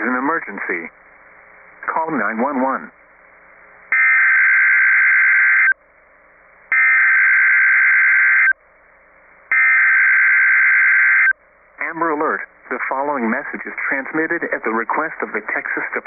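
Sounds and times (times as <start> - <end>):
screeching digital data tones: 3.9 - 5.8, 6.7 - 8.6, 9.5 - 11.4.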